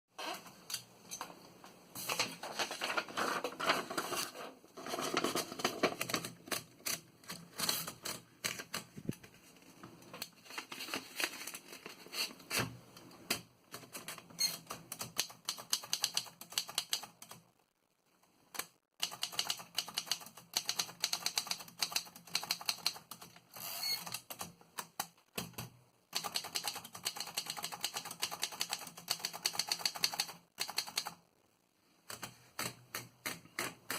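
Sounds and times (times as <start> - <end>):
typewriter keys clicking: 13.3 - 17.4, 18.6 - 23.3, 24.1 - 31.2.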